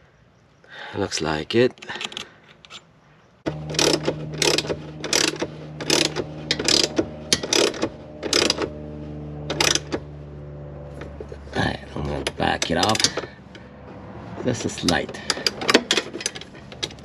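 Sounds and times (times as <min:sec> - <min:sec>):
steady hum: 0:03.5 - 0:17.0
ratchet wrench clicking: 0:03.7 - 0:08.7, 0:09.5 - 0:10.0, 0:12.6 - 0:13.3.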